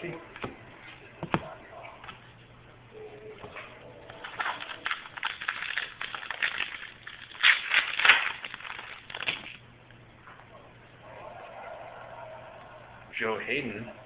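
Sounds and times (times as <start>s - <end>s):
cards and foil wrapper crinkling: 4.0s - 9.6s.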